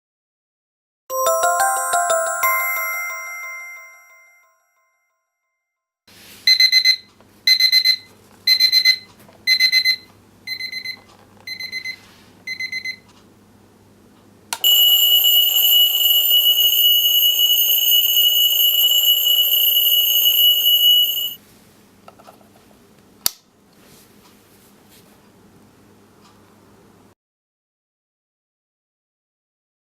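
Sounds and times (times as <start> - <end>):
alarm clock beeping: 6.5 - 13.0, 14.6 - 21.4
continuous high-pitched tone: 14.6 - 21.4.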